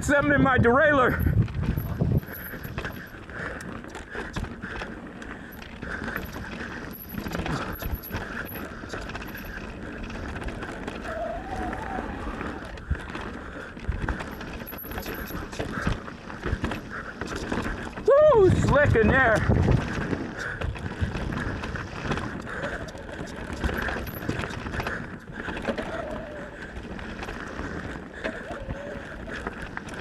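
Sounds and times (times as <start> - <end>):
bike knocking and rattling: 0.0 - 30.0
tyre noise on dirt and rock: 1.2 - 28.2.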